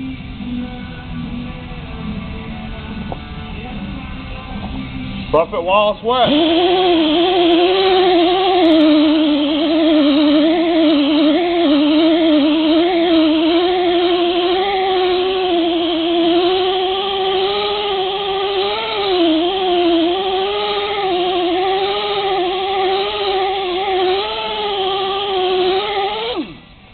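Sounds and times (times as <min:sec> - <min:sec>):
rotary buffer motor whine: 0:05.8 - 0:26.9.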